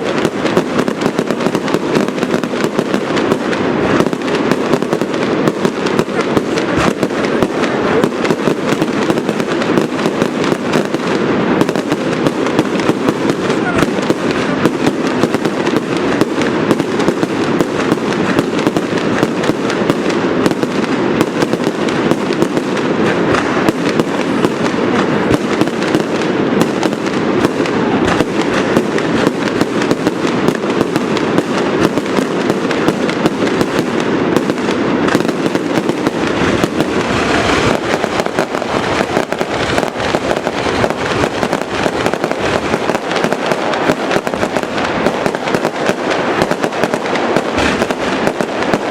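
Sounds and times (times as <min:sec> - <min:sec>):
fireworks bangs and crackling: 0:00.0 - 0:48.9
low firework booms: 0:00.0 - 0:48.9.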